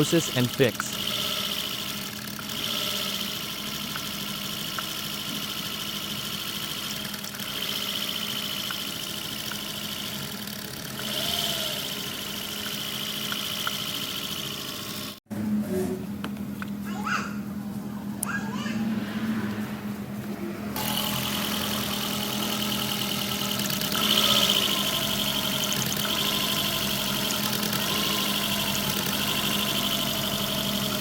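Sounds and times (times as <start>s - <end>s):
car engine idling: 19.4s - 31.0s.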